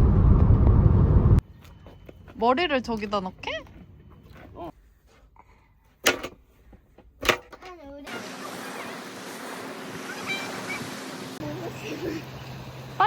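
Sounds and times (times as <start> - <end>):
sea surf on the shore: 8.1 - 13.0.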